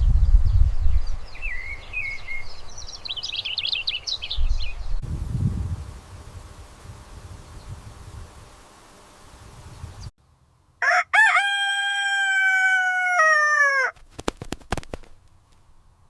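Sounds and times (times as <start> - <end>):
outdoor background noise: 0.0 - 16.0
rooster crowing: 10.8 - 14.0.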